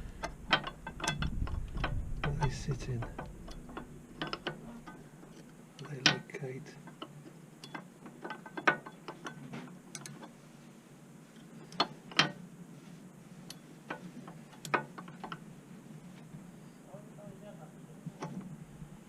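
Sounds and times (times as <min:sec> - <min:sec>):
metallic clicks of brake pads: 0:00.0 - 0:10.4.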